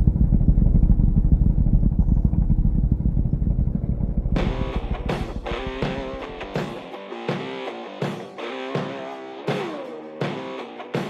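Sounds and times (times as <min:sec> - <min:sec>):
off-road vehicle engine pulsing: 0:00.0 - 0:06.8
rock music with guitar and drums: 0:04.4 - 0:11.0.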